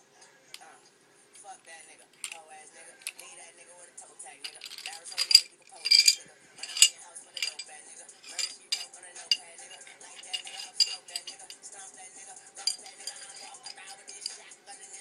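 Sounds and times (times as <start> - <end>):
metal parts set down on hard surface: 2.2 - 2.4, 4.4 - 7.6, 8.2 - 11.6, 12.6 - 14.4
metal pistol parts clicking: 2.2 - 2.4, 3.0 - 3.2, 4.5 - 11.6, 12.6 - 14.4.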